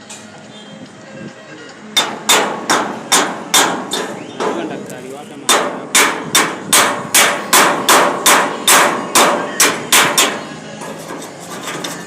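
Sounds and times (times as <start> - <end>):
hammer striking metal: 2.0 - 4.8, 5.4 - 12.0.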